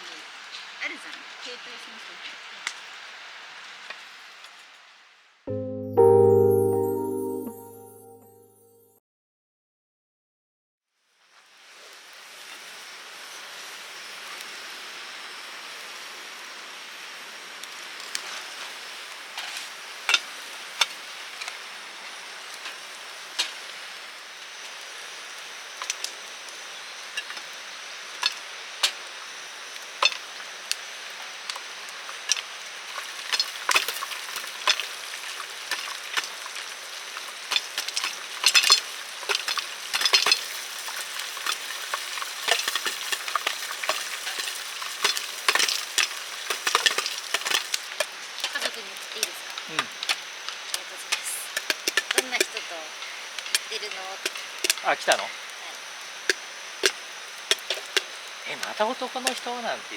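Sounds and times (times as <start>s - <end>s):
wood fire crackling: 17.6s - 59.9s.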